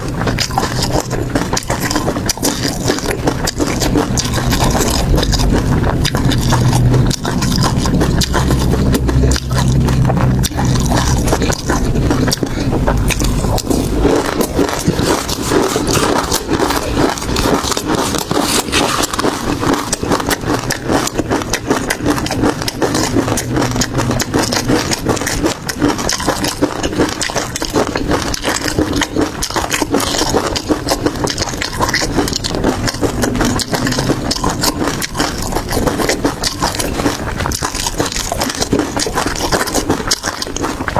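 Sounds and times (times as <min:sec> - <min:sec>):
crunching of seafood being chewed: 0:00.0 - 0:40.9
low thuds: 0:04.6 - 0:17.4.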